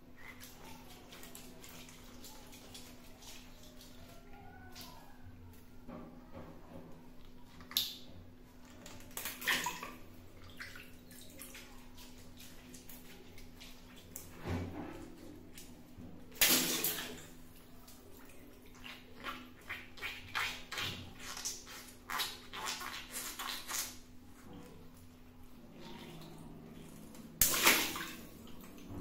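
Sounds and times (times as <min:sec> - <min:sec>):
water splashing: 0:16.3 - 0:24.0, 0:25.6 - 0:29.0.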